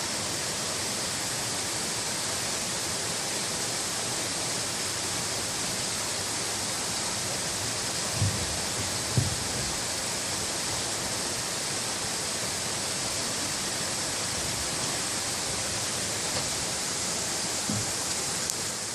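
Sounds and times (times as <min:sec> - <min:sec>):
stream water rushing: 0:00.0 - 0:18.9
low thump: 0:08.2 - 0:09.7.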